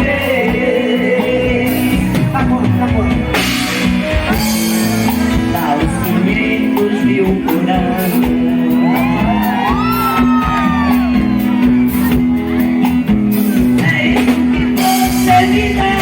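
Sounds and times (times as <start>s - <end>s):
live band music: 0.0s - 16.0s
steady drum beat: 0.0s - 16.0s.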